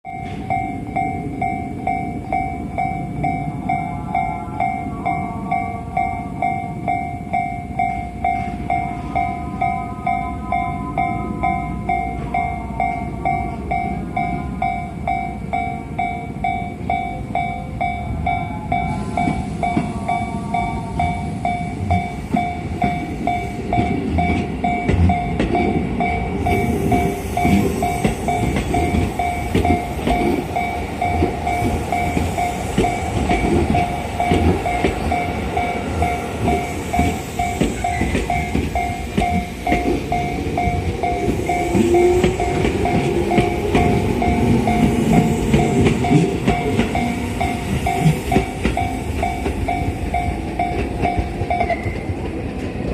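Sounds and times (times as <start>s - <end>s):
level-crossing warning bell ringing: 0.0s - 52.9s
train rumbling: 0.0s - 52.9s
higher chime: 0.1s - 52.1s
wheels clacking over rail joints: 26.8s - 52.9s.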